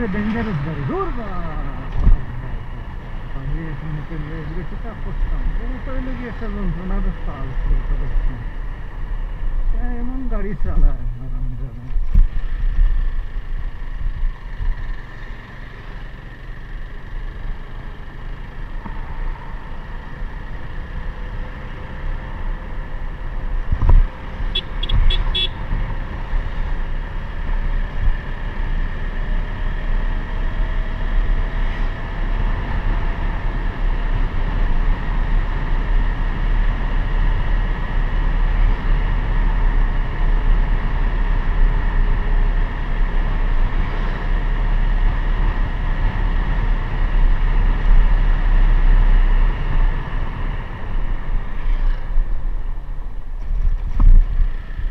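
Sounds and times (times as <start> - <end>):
vehicle engine rumble: 0.0 - 54.9
wind rumble on microphone: 23.5 - 26.9, 42.2 - 54.9
vehicle horn toots: 24.5 - 25.6.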